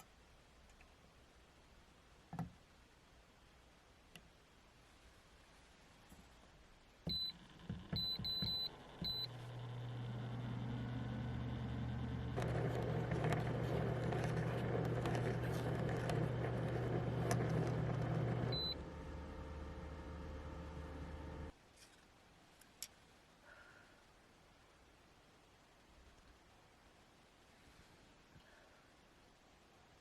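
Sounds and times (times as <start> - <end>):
low electric hum: 5.9 - 21.6
electronic button beeps: 8.0 - 9.3.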